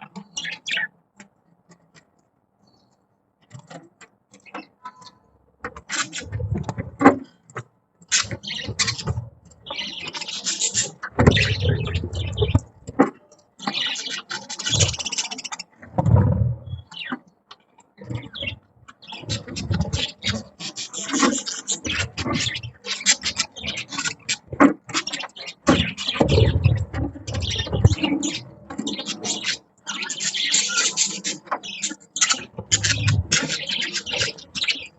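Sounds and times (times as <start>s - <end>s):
budgies chattering: 0.1s - 0.9s, 4.4s - 7.2s, 8.1s - 17.3s, 18.0s - 34.9s.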